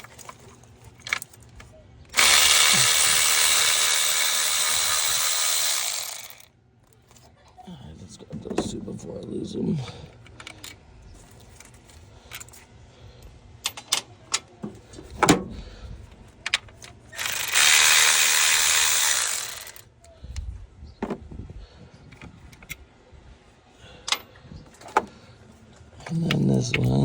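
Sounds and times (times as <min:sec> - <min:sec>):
electric ratchet running: 0:02.1 - 0:06.5, 0:17.1 - 0:19.9.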